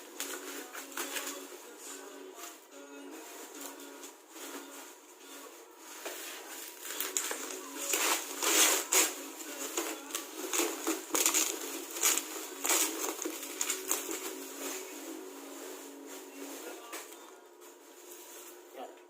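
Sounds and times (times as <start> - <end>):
packaging crinkling and rustling: 0.1 - 2.0, 6.0 - 17.3.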